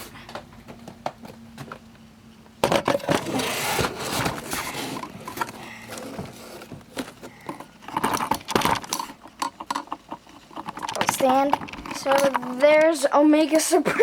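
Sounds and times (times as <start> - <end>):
cardboard and plastic packaging rustling: 2.6 - 13.0.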